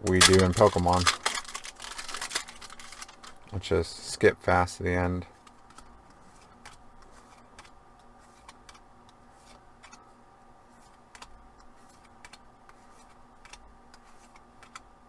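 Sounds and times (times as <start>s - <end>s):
low steady hum: 0.0s - 15.0s
cards being flipped by hand: 0.1s - 3.4s, 5.4s - 10.0s, 10.7s - 14.8s.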